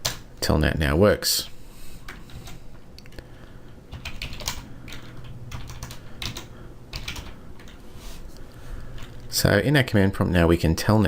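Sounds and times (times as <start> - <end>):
computer keyboard typing: 0.0 - 0.4, 3.9 - 7.8.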